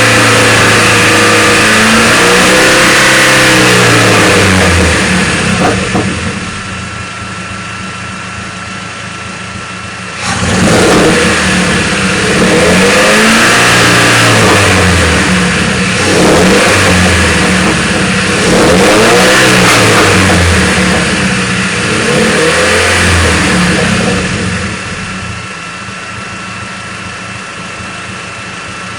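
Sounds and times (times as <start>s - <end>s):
car engine idling and revving: 0.0s - 28.9s.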